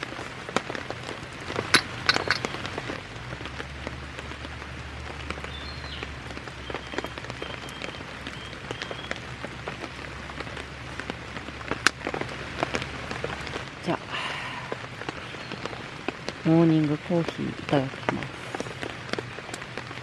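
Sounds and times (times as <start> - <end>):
rain falling: 0.0 - 20.0
raindrops tapping close by: 0.0 - 20.0.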